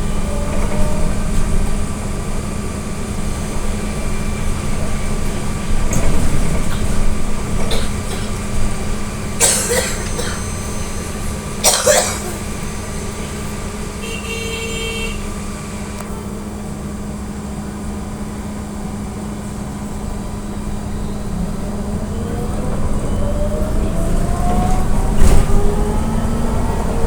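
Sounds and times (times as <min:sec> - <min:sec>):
electric traction drive whine: 0:17.8 - 0:27.0.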